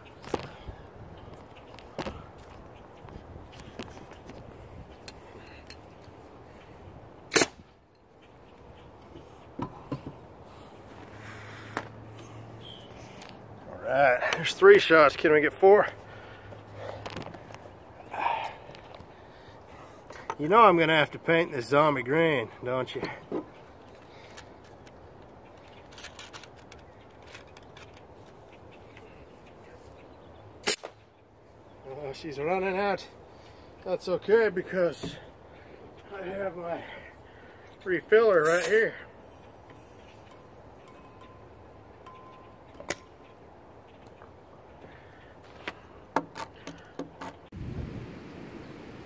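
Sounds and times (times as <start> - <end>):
sharp air rifle shot: 7.3 - 7.7, 30.6 - 31.0.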